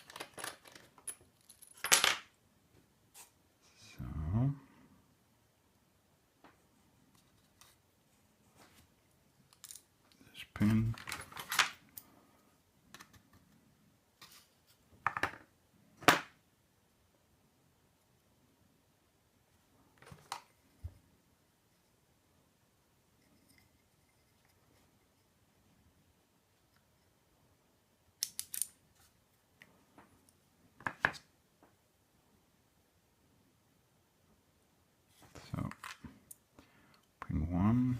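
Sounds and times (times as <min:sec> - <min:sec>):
small metal lock parts clicking: 0:00.0 - 0:01.8, 0:28.2 - 0:28.8
metallic clicks of lock parts: 0:28.2 - 0:28.8.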